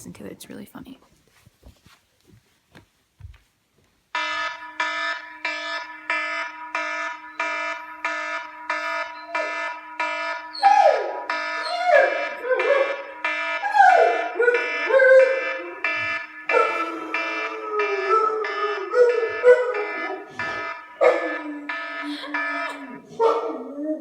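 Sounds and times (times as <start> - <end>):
phone alarm chime: 4.2 - 23.1
dog howling: 10.5 - 15.9, 16.5 - 24.0.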